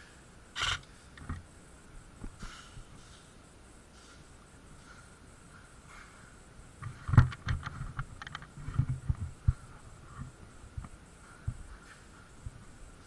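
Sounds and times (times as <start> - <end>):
sharp knocks and clicks: 6.8 - 9.6.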